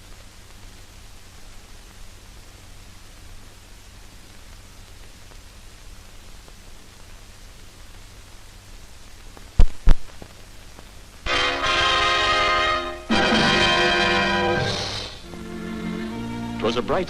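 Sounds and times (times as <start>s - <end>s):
film soundtrack hiss and hum: 0.0s - 17.0s
brass-led orchestral music: 11.3s - 17.0s.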